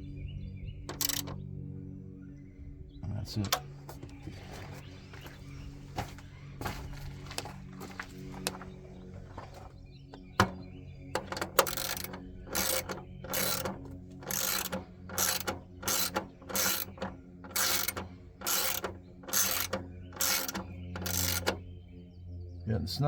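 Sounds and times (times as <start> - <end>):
hand ratchet clicking: 0.9 - 1.4, 10.2 - 10.6, 11.2 - 21.6.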